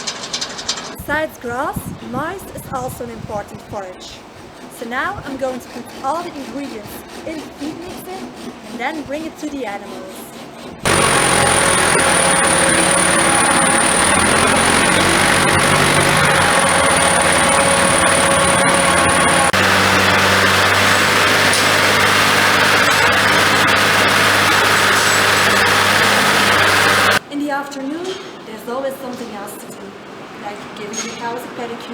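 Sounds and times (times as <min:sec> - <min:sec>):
thin high whine: 0:10.8 - 0:27.2
tractor engine running: 0:10.8 - 0:27.2.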